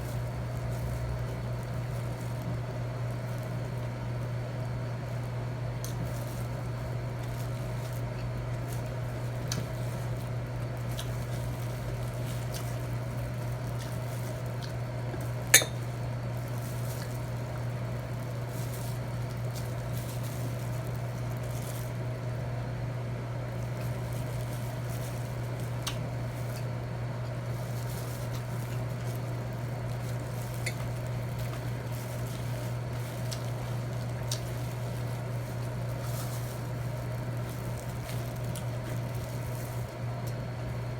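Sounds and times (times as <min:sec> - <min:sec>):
soft eating sounds: 0:00.0 - 0:40.9
steady low hum: 0:00.0 - 0:40.9
cutlery clinking on a plate: 0:15.6 - 0:15.8.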